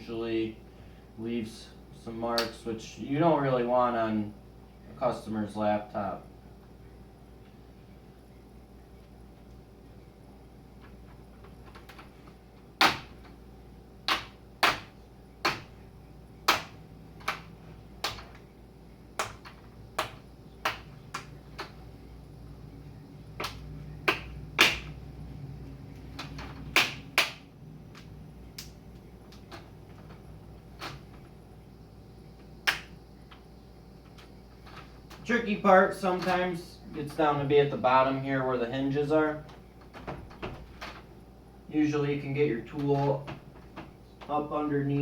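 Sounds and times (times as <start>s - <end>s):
plastic clips snapping: 32.6s - 33.0s.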